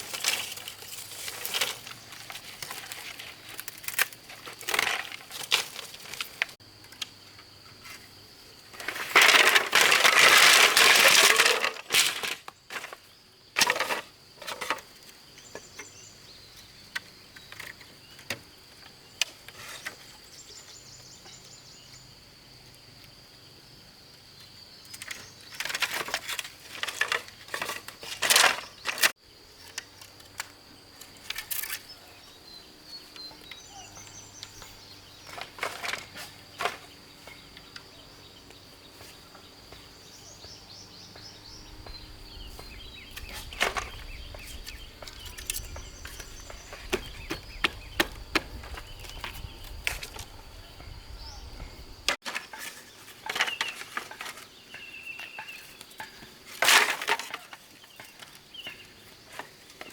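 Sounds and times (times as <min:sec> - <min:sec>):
bird chirps: 0:31.7 - 0:35.4, 0:37.2 - 0:52.1.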